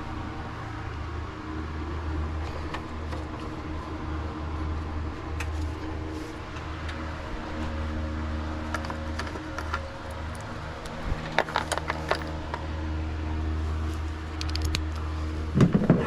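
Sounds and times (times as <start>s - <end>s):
low mechanical hum: 0.0s - 16.0s
parts clicking and tapping: 8.6s - 12.6s, 14.3s - 15.0s.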